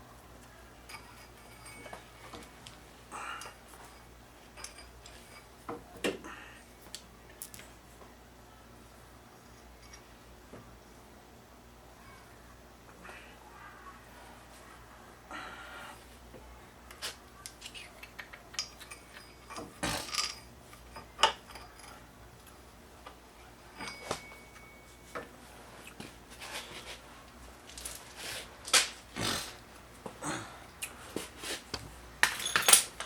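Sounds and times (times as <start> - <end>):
metal hand tools clinking: 0.9 - 2.4, 3.4 - 5.5, 18.1 - 22.6, 32.2 - 33.0.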